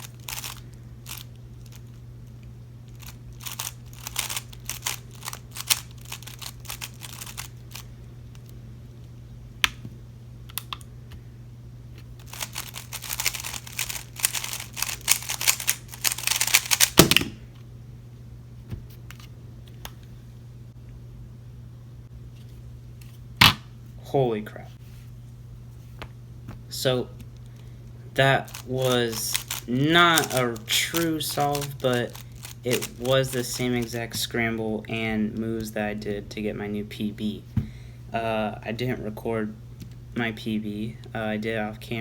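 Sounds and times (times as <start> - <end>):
cube thump: 16.8 - 17.4.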